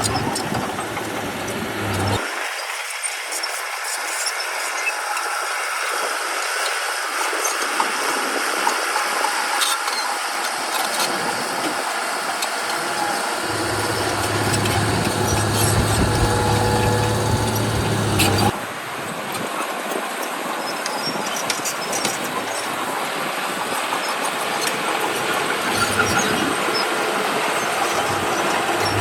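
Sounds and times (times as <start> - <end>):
deep engine rumble: 0.0 - 2.2, 12.7 - 18.6, 27.9 - 29.0
diesel engine running: 0.0 - 2.2, 12.5 - 18.7, 25.3 - 29.0
light rattles and clanks: 13.4 - 18.6.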